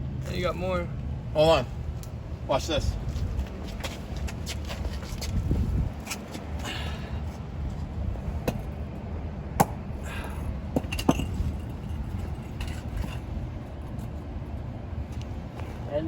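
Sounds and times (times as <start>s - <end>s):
furnace burner rumble: 5.4s - 13.8s.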